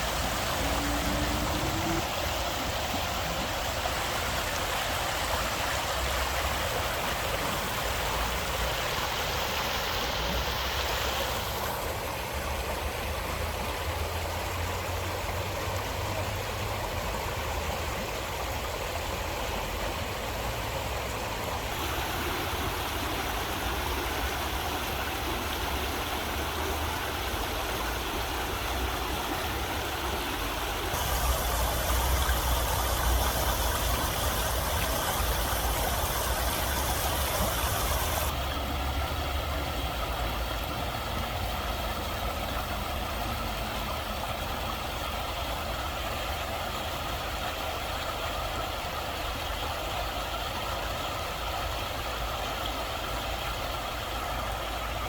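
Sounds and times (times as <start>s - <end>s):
stream water rushing: 0.0s - 55.0s.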